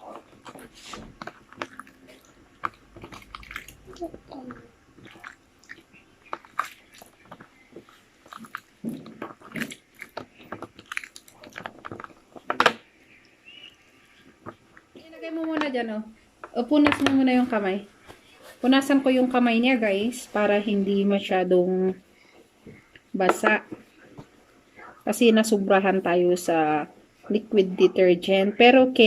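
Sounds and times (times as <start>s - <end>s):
slime squelching and clicking: 0.1s - 13.4s.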